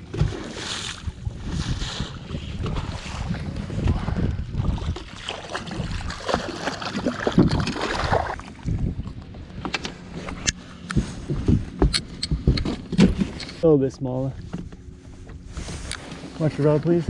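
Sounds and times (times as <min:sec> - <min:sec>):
water sloshing against hull: 0:00.0 - 0:17.0
wind gusting over microphone: 0:01.0 - 0:13.6.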